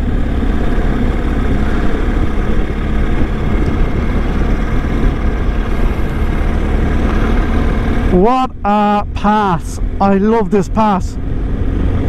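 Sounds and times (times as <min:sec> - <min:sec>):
wind noise: 0:00.0 - 0:08.1
motorcycle engine running: 0:00.0 - 0:10.2
road noise: 0:00.0 - 0:12.0.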